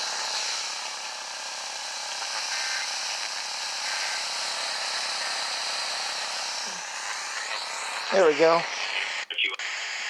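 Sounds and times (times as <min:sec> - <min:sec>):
radio static hiss: 0:00.0 - 0:10.0
faint short radio tones: 0:02.2 - 0:03.0, 0:06.2 - 0:10.0.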